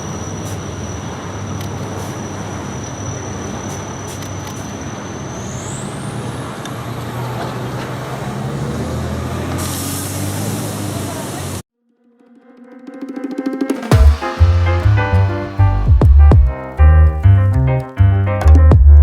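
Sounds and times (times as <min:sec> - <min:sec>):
air hissing: 0:00.0 - 0:06.4, 0:09.4 - 0:11.6, 0:13.9 - 0:16.0
diesel engine running: 0:00.0 - 0:11.6, 0:13.9 - 0:17.4
high whine gliding upward: 0:13.0 - 0:17.1.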